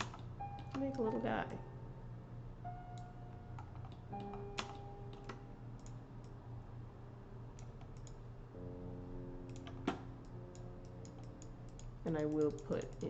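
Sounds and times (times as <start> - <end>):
soft background music: 0.0 - 7.5
computer mouse clicks: 3.0 - 6.4, 7.6 - 8.2, 9.5 - 13.0.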